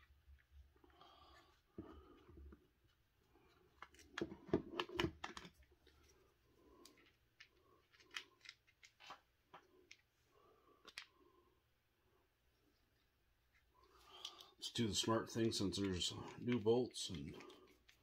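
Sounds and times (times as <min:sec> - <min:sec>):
small parts and tools clicking: 0:06.8 - 0:10.1, 0:10.8 - 0:11.2, 0:12.8 - 0:14.6.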